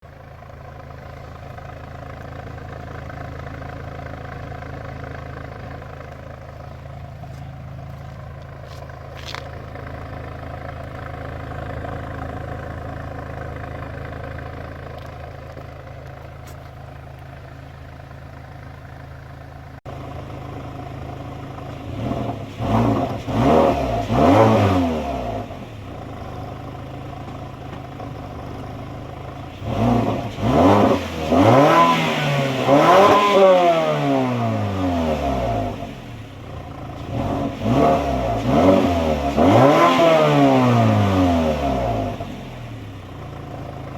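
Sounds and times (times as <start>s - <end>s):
car engine idling and revving: 0.0s - 43.9s.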